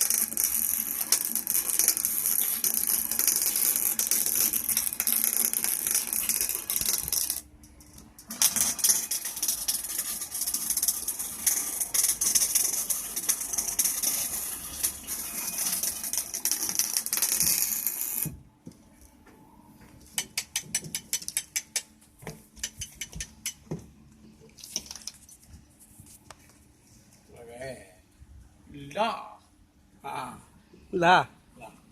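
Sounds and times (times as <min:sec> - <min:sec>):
rapid mechanical clicking and rattling: 0:00.0 - 0:18.3.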